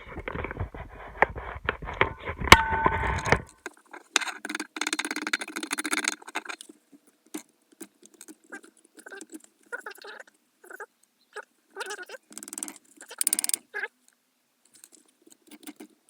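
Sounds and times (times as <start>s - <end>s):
metal clattering and scraping: 0.0s - 3.5s.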